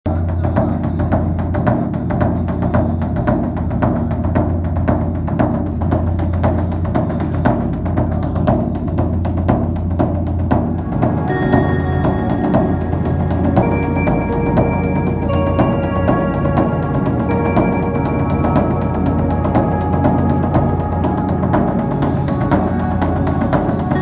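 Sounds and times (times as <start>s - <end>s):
held higher notes: 0.1s - 24.0s
quick percussion beat: 0.1s - 24.0s
low drone: 0.2s - 24.0s.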